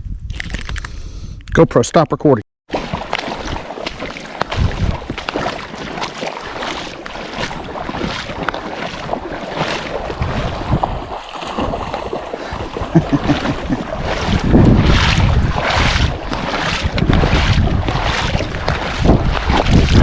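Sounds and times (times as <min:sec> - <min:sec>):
river water splashing: 0:02.7 - 0:20.0
wind buffeting microphone: 0:03.4 - 0:06.0, 0:07.2 - 0:20.0.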